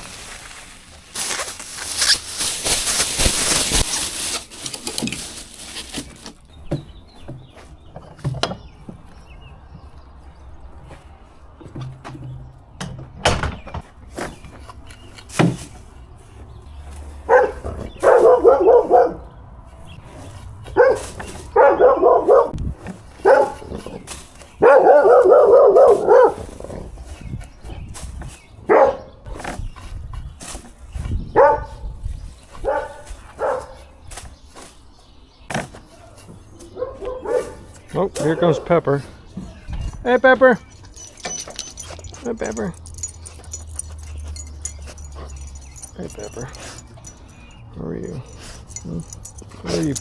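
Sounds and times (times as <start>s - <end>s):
dog barking: 17.2s - 19.3s, 20.7s - 22.6s, 23.2s - 23.8s, 24.6s - 26.5s, 28.7s - 29.2s, 31.4s - 31.8s, 32.6s - 33.9s, 36.7s - 37.8s.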